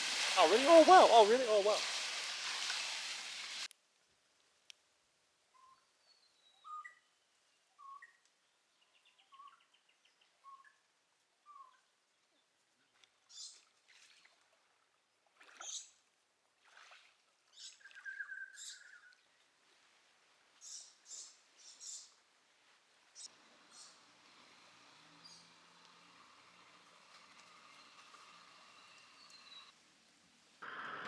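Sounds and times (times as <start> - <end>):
harsh hissy sounds: 0.0 - 3.7
faint bird trill: 5.6 - 7.1, 7.8 - 8.2.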